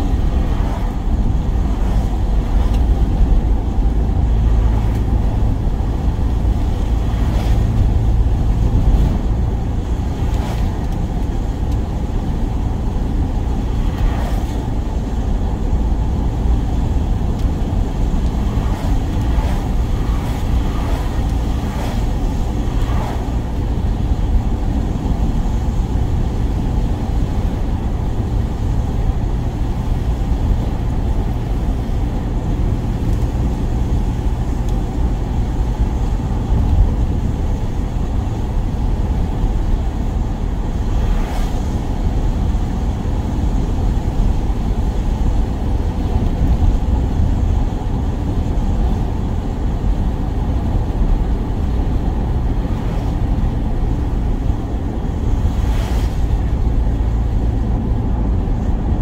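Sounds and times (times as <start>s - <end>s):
van driving rumble: 0.0s - 59.0s.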